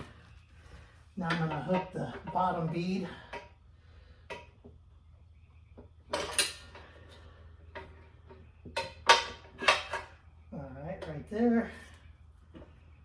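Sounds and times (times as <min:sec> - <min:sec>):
metal lever clanking on tire changer: 0:08.7 - 0:10.2.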